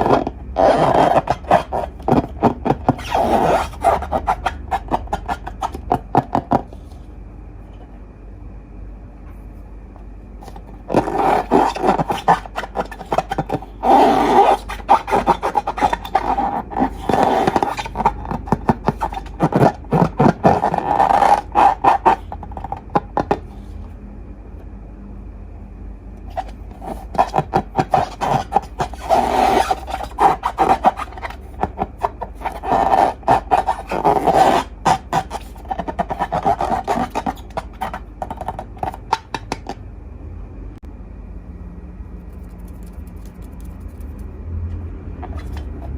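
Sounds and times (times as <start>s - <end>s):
soft rubbing: 0.0s - 6.0s, 10.4s - 23.9s, 26.3s - 39.2s.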